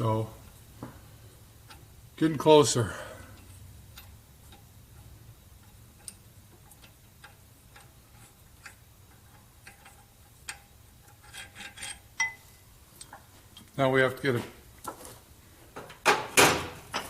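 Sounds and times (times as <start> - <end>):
hand tools clicking and tapping: 3.3 - 12.4.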